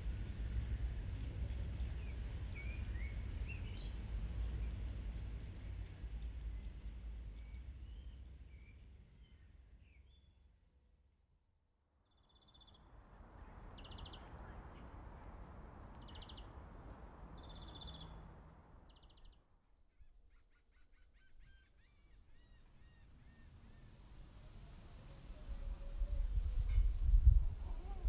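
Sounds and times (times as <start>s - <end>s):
insects trilling: 17.8s - 28.0s
bird chirps: 20.0s - 23.9s, 25.4s - 28.0s.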